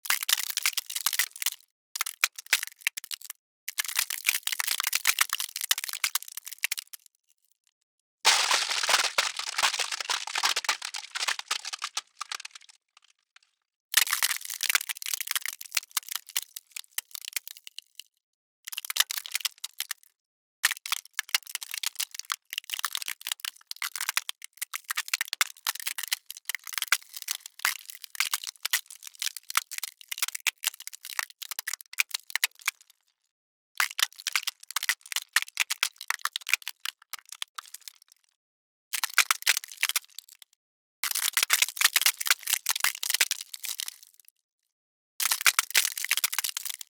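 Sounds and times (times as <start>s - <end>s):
ice cracking: 8.3s - 12.7s.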